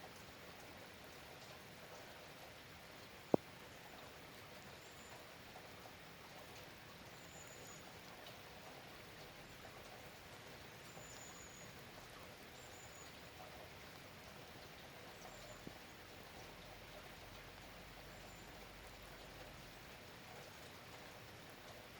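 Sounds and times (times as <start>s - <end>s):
faint drip ticks: 0.0s - 21.9s
soft rain falling: 0.0s - 21.9s.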